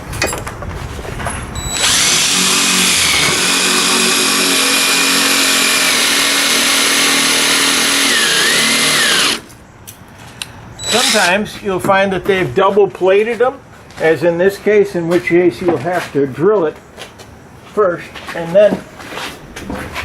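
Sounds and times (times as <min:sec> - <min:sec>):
power drill drilling sheet metal: 0:01.6 - 0:09.5, 0:10.8 - 0:11.4.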